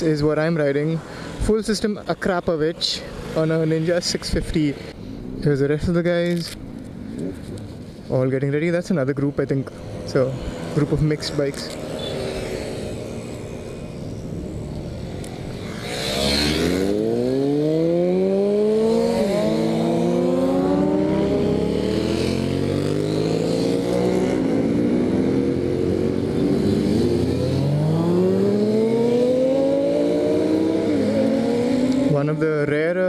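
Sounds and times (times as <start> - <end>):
motorcycle engine accelerating: 9.8 - 32.6.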